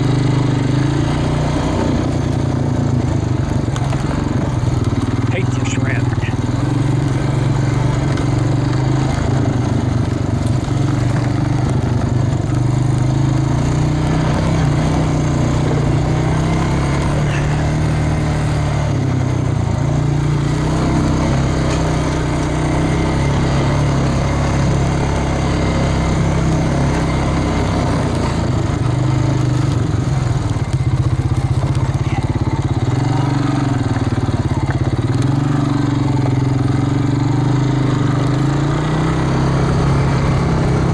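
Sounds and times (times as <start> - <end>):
engine running low hum: 0.0 - 40.9.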